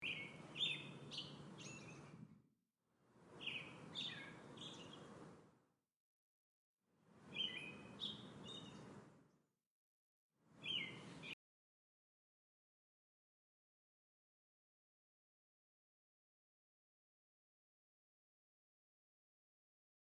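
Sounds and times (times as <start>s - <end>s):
songbird chirps: 0.0s - 2.4s, 3.3s - 5.4s, 7.2s - 9.3s, 10.6s - 11.4s.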